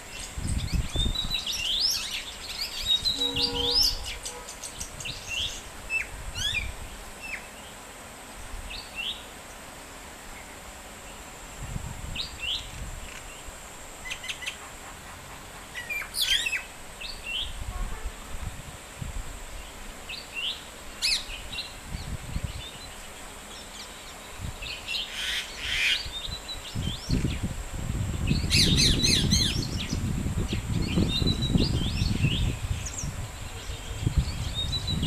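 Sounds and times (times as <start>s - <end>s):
birds chirping and trilling: 0.0s - 7.9s, 12.2s - 17.6s, 19.6s - 27.5s, 28.3s - 35.0s.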